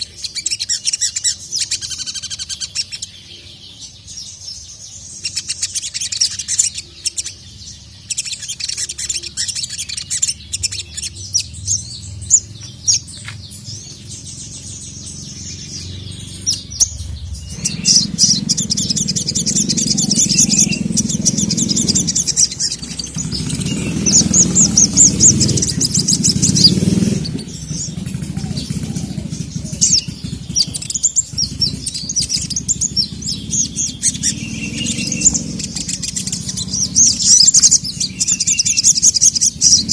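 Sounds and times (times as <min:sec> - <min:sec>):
bird chirps and trills: 0:00.0 - 0:39.9
low rumble: 0:10.4 - 0:38.4.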